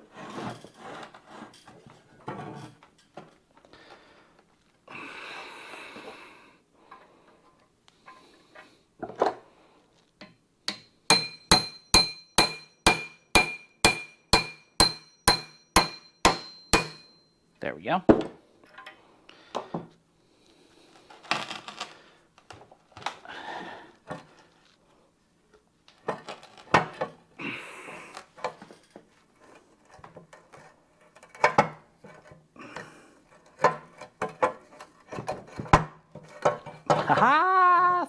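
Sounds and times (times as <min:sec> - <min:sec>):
metal clinks and knocks: 0:10.2 - 0:17.4.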